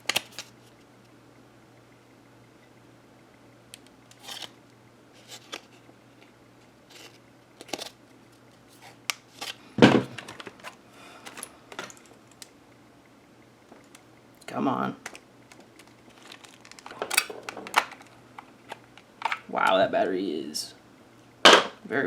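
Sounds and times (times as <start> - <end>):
batteries rattling: 10.1 - 12.1, 15.1 - 19.5.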